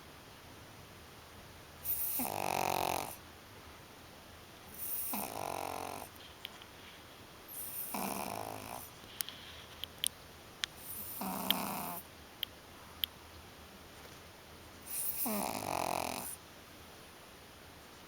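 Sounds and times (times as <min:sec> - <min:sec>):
dog snoring: 0:01.8 - 0:03.2, 0:04.7 - 0:06.2, 0:07.5 - 0:09.0, 0:10.8 - 0:12.0, 0:14.8 - 0:16.4.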